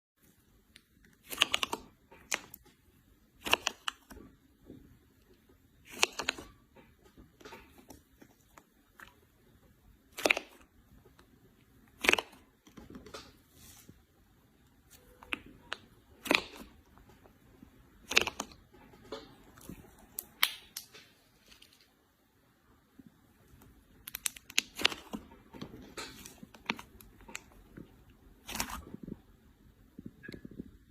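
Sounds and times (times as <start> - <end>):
sharp slime pops: 16.2 - 16.7.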